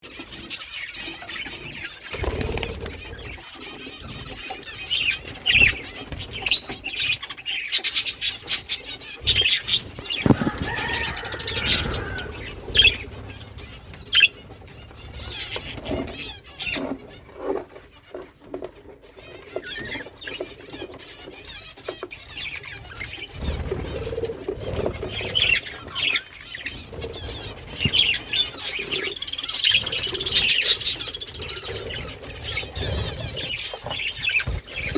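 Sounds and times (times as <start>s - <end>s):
small birds chirping: 0.0s - 34.9s
wings flapping: 1.6s - 3.4s, 8.4s - 17.8s.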